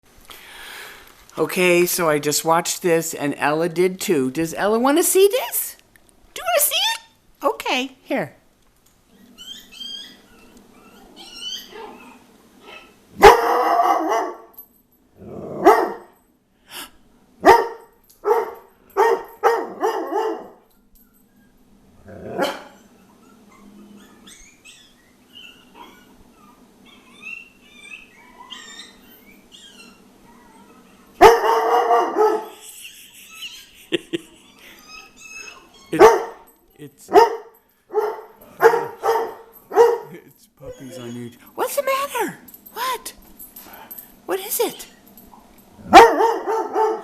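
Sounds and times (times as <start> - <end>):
puppy yips and whimpers from device: 9.1 - 13.0, 22.5 - 31.0, 34.4 - 36.0
dog barking: 12.7 - 14.5, 15.6 - 16.2, 17.4 - 20.6, 22.4 - 22.8, 31.2 - 32.6, 35.9 - 36.5, 37.1 - 40.2, 45.8 - 47.0.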